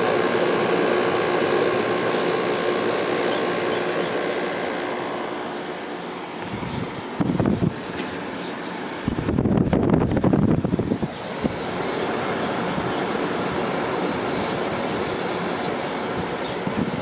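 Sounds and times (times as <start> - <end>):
window air conditioner running: 0.0 - 17.0
wind buffeting microphone: 6.4 - 8.0, 9.0 - 11.8.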